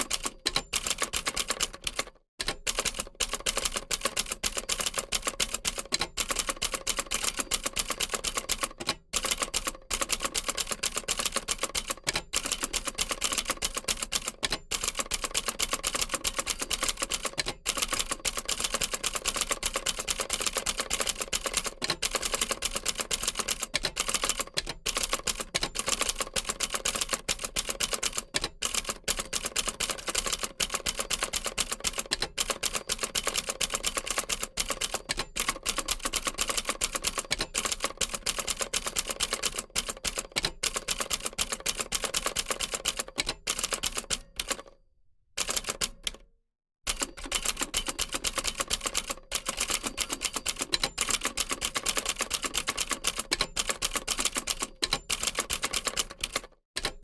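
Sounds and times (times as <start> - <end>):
typewriter key strikes: 46.9 - 57.0.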